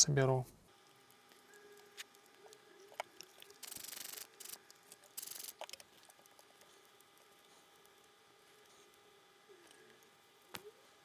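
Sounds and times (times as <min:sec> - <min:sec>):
small parts clicking: 0:00.9 - 0:06.4
ratchet-like clicking: 0:03.5 - 0:05.9.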